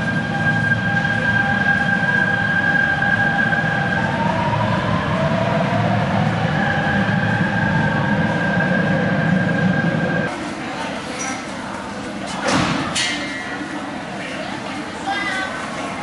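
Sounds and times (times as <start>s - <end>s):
train rumbling: 0.0s - 10.9s.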